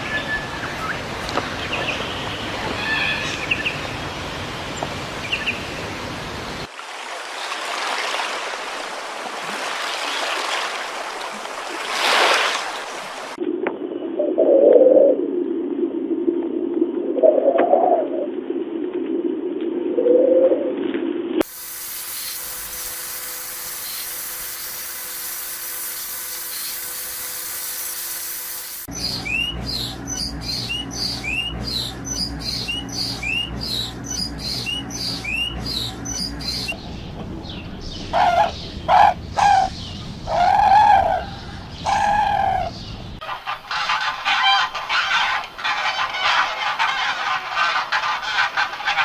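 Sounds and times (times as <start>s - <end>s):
dove cooing: 14.2s - 15.2s
steady hiss: 21.4s - 28.9s
small bird chirping: 28.9s - 36.9s.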